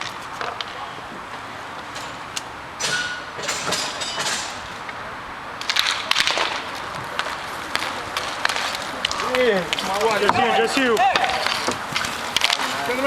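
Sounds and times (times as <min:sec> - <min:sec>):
hockey sticks clacking: 0:00.0 - 0:13.0
skates scraping on ice: 0:05.6 - 0:13.0.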